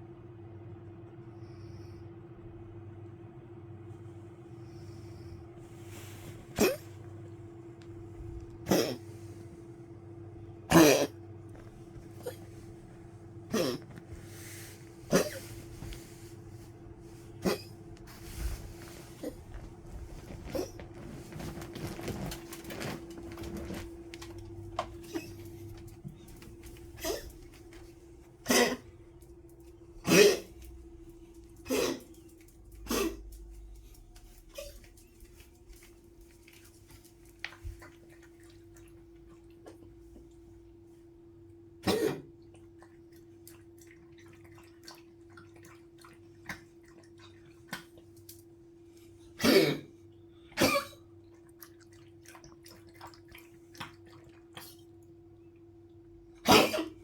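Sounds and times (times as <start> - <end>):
dog coughing: 6.4 - 7.1, 8.5 - 9.3, 10.7 - 12.7, 13.4 - 16.2, 17.2 - 22.0, 24.8 - 29.2, 30.0 - 33.8, 34.4 - 35.3, 41.8 - 42.6, 49.2 - 51.2, 56.4 - 57.0.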